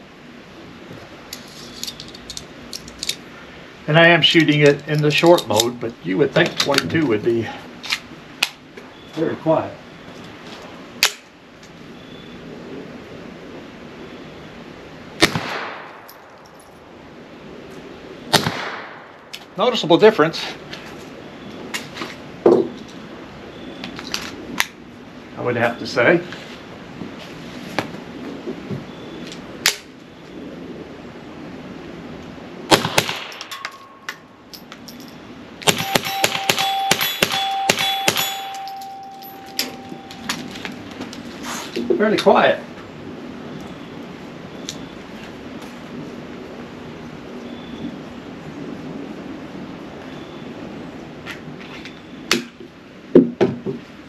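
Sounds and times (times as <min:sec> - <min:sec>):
suppressed gunshots: 0:15.2 - 0:16.1, 0:18.3 - 0:19.1, 0:32.7 - 0:33.6
metallic ringing: 0:33.3 - 0:40.8.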